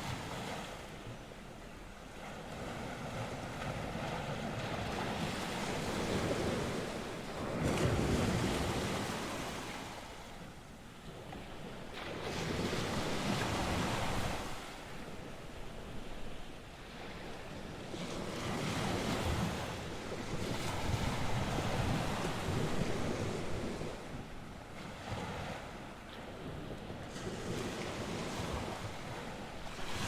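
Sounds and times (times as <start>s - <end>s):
wind buffeting microphone: 11.1s - 30.0s.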